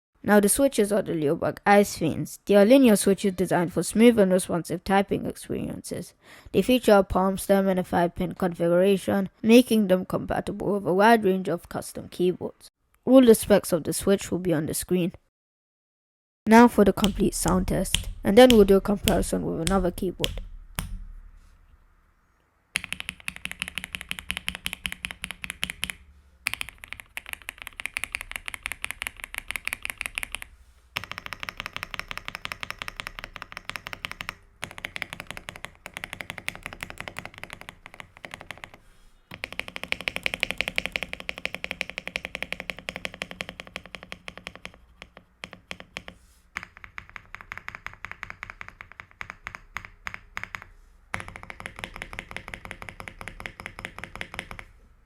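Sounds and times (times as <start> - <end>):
mechanical keyboard typing: 16.9 - 21.0, 22.8 - 54.7.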